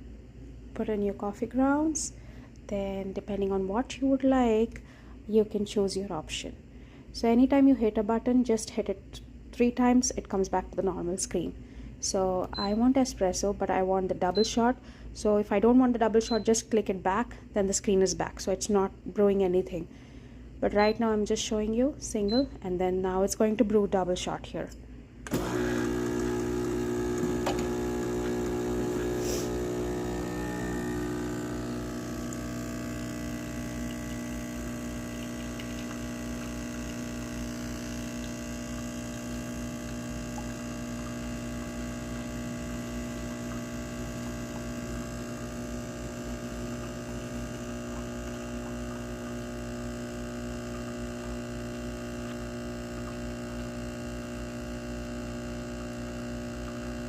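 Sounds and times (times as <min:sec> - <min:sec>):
espresso machine pump humming: 0:25.2 - 0:57.0.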